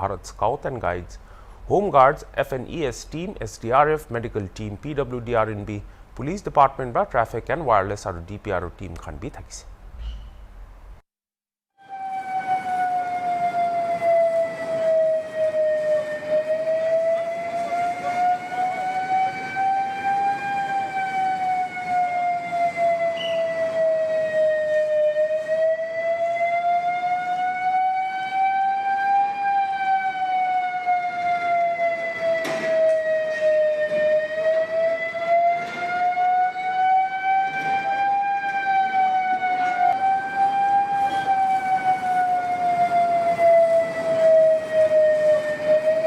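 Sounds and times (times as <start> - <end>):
emergency siren wailing: 11.8 - 46.0.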